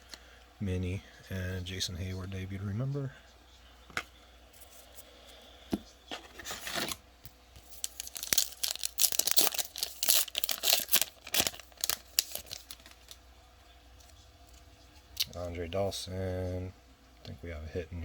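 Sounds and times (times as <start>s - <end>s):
card pack wrapper tearing and crinkling: 6.3s - 7.0s, 7.6s - 13.2s.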